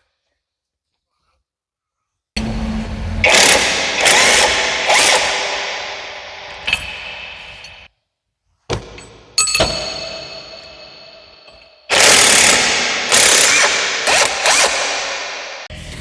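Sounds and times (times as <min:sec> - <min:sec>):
metal clanks ringing: 0:02.4 - 0:07.9, 0:08.8 - 0:12.0.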